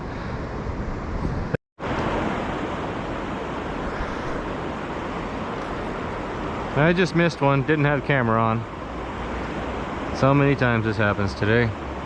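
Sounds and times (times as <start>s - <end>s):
river water flowing: 1.8s - 12.0s.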